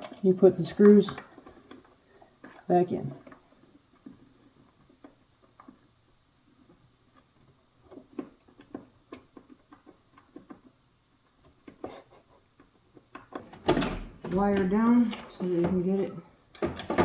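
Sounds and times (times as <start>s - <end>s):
plastic parts clicking and tapping: 12.6s - 17.0s.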